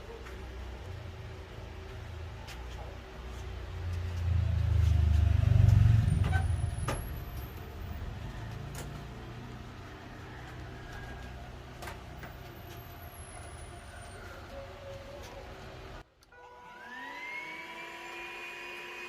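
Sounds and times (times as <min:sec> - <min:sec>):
passing vehicle engine rumble: 0:01.0 - 0:16.0.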